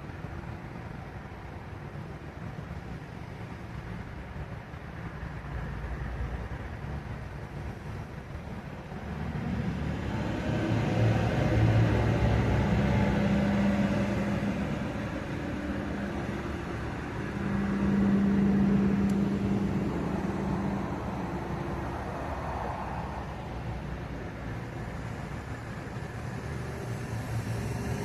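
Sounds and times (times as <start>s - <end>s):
engine running with low hum: 0.0s - 28.0s.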